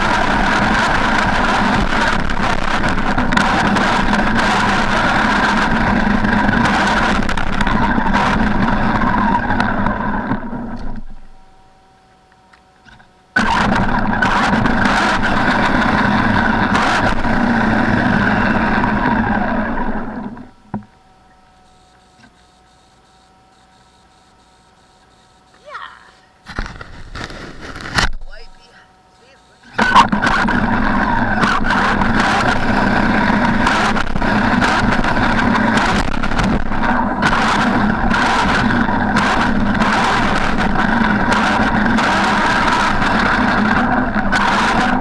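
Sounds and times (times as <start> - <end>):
rc truck motor and tyres: 0.0 - 11.8, 12.8 - 23.0, 26.5 - 45.0
faint steady whine: 0.0 - 45.0.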